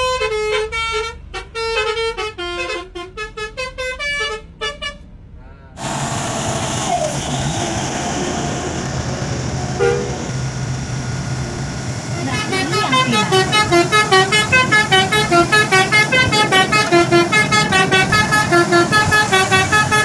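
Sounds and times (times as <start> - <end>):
bus horn toot: 0.0 - 5.1, 9.7 - 10.3, 12.2 - 20.0
multi-tone bus horn melody: 0.0 - 5.2, 9.7 - 10.3, 12.1 - 20.0
bus engine running: 0.0 - 20.0
road noise: 0.0 - 20.0.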